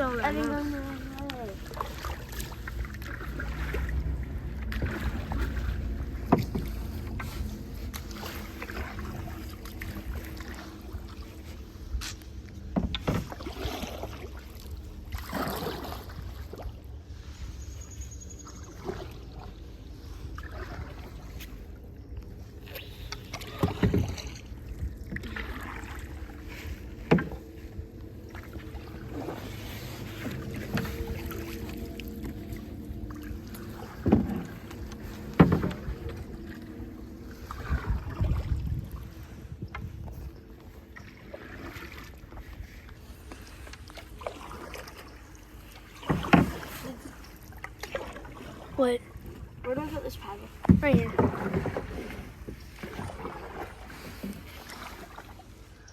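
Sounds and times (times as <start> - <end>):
paddles swishing through water: 0.0 - 55.9
wind noise on microphone: 37.3 - 40.5.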